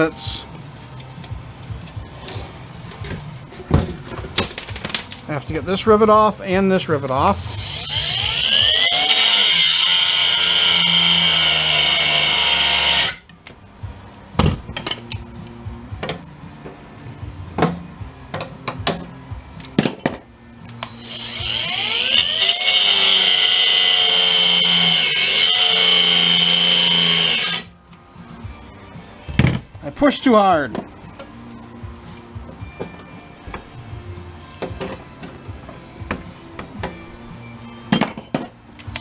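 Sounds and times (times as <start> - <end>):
electric drill whining: 7.5 - 13.3, 20.9 - 27.7.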